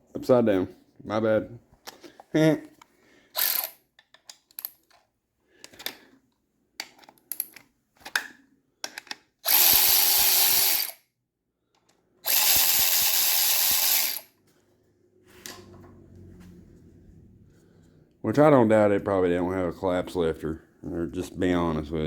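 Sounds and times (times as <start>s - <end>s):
parts clicking and knocking: 2.8s - 10.9s
power tool running: 9.5s - 11.0s, 12.3s - 14.3s.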